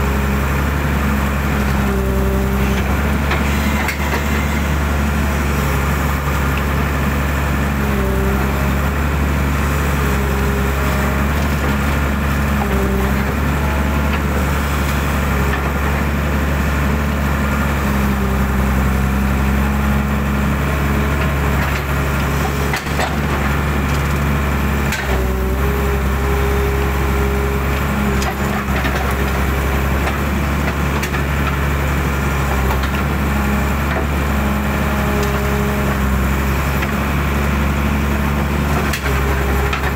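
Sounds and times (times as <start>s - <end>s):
hydraulic whine: 0.0s - 31.2s
excavator diesel engine running: 0.0s - 39.9s.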